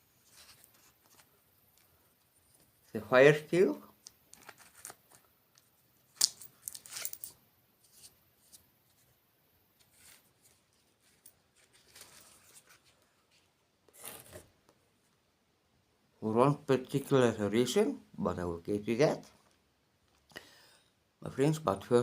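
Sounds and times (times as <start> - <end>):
soft rustling: 0.0 - 3.0, 9.8 - 15.1.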